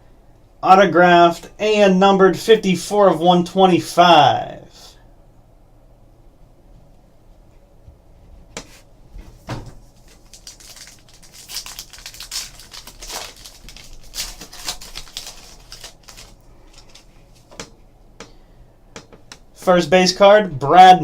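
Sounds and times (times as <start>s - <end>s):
card wrapper crinkling: 9.8s - 17.5s.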